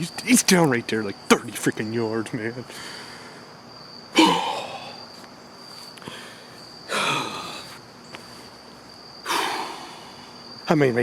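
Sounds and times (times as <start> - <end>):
crickets chirring: 0.0 - 11.0
man exhaling heavily: 4.2 - 5.0, 9.3 - 10.3.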